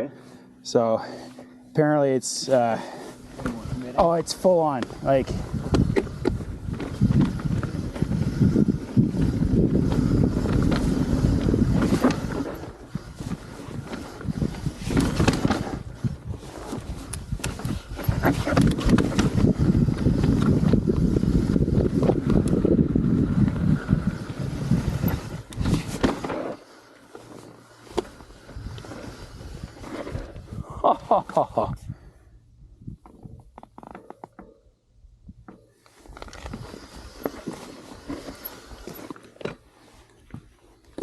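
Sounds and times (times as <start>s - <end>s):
wind buffeting microphone: 4.7s - 26.0s, 28.4s - 30.8s, 31.6s - 33.6s
mountain bike rattling over rock: 5.1s - 26.6s.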